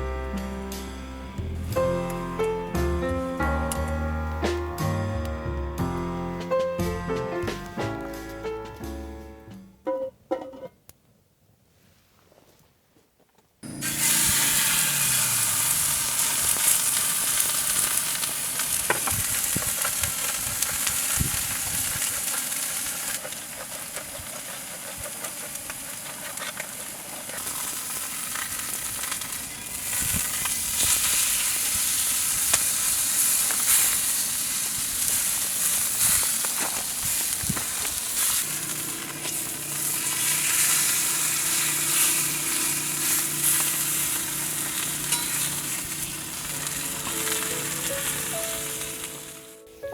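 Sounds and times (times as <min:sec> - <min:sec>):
food sizzling in hot pan: 0:13.6 - 0:49.7
low steady hum: 0:38.0 - 0:49.8.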